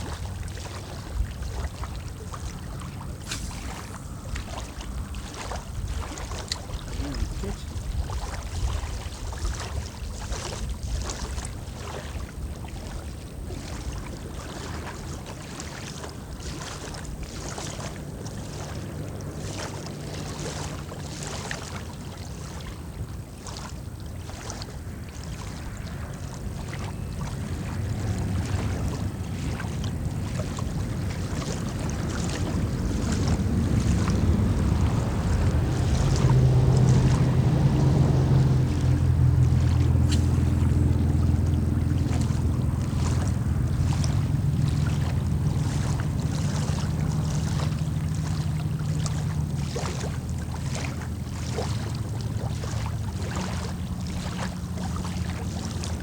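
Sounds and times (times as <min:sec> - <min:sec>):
engine humming: 0:00.0 - 0:07.9, 0:22.7 - 0:56.0
water lapping: 0:00.0 - 0:56.0
wind buffeting microphone: 0:00.0 - 0:56.0.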